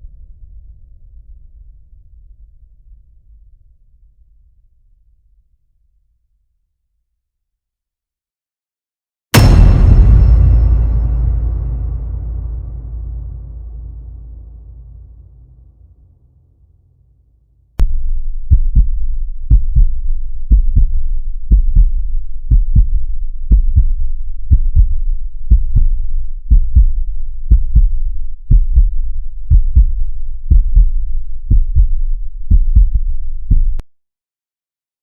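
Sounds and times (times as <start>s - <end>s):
heartbeat thumps: 17.8s - 33.8s.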